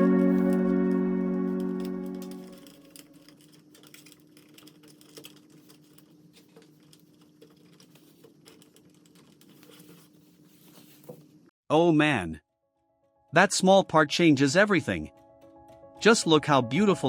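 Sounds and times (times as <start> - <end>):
background music: 0.0 - 3.3, 12.6 - 17.0.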